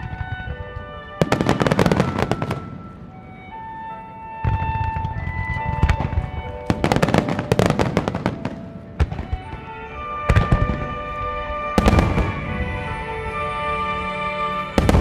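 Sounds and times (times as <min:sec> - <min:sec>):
music with long held notes: 0:00.0 - 0:15.0
firework shells bursting: 0:04.3 - 0:13.4.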